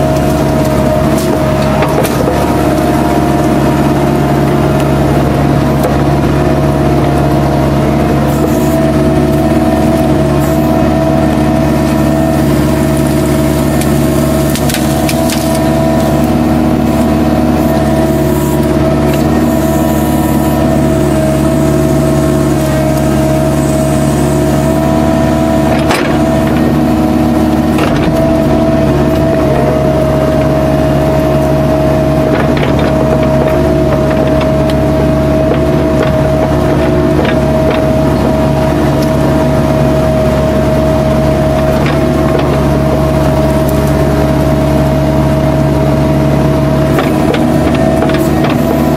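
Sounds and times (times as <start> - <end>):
excavator diesel engine: 0.0 - 48.9
steady whine: 0.0 - 48.9
sharp cracks of wood breaking: 13.8 - 16.3.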